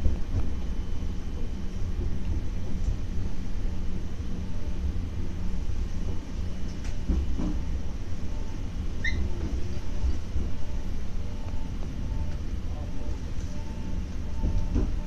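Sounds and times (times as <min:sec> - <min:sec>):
steady hum: 0:00.0 - 0:15.0
train rumbling: 0:00.0 - 0:15.0
short high squeak: 0:09.0 - 0:09.4.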